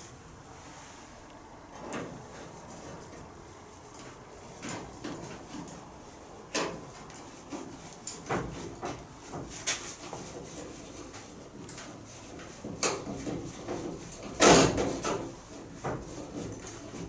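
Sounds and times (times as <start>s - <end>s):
tools and parts knocking: 12.6s - 16.6s.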